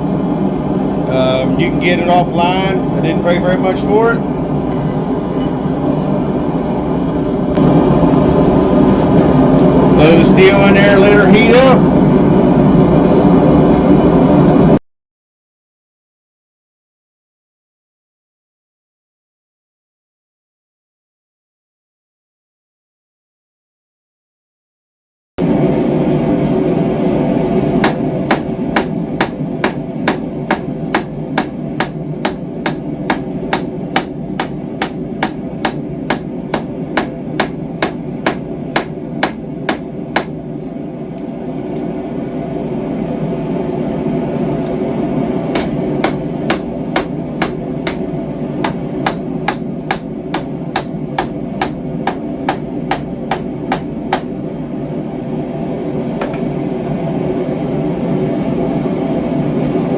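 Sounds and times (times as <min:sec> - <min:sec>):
forge burner roar: 0:00.0 - 0:14.8, 0:25.4 - 0:59.9
hammer ringing on anvil: 0:04.7 - 0:05.6, 0:27.8 - 0:40.5, 0:45.6 - 0:54.5.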